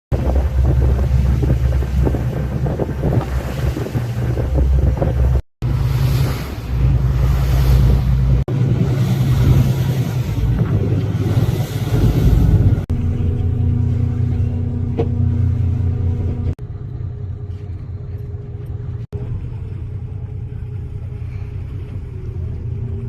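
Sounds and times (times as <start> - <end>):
water rushing past hull: 0.1 - 16.6, 18.8 - 23.0
wind buffeting microphone: 0.1 - 16.6
boat engine running: 0.1 - 23.0.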